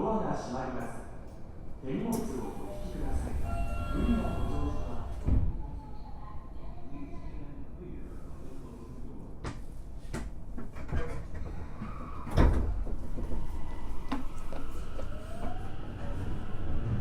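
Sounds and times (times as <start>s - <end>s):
train inverter rising whine: 2.2s - 6.1s
sliding doors closing with clicks: 9.5s - 17.0s.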